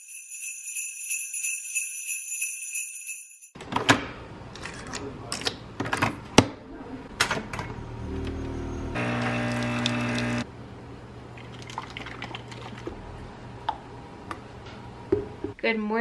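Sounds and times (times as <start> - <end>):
small sleigh bells shaking: 0.0 - 3.6.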